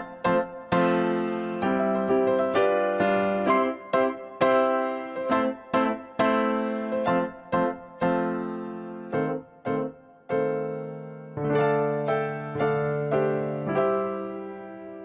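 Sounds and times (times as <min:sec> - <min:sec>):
electric piano notes and chords: 0:00.0 - 0:15.0.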